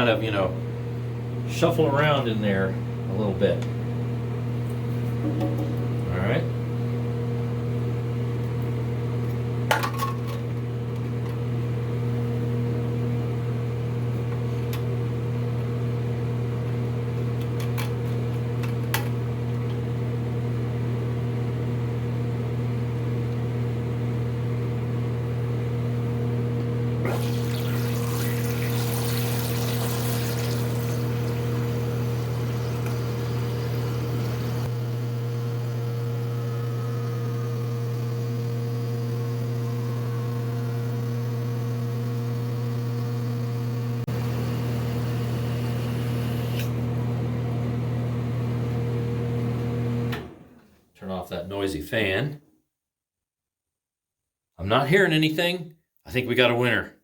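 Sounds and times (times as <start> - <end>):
water hissing and pouring: 27.0 - 34.7
noisy fan humming: 27.0 - 38.5.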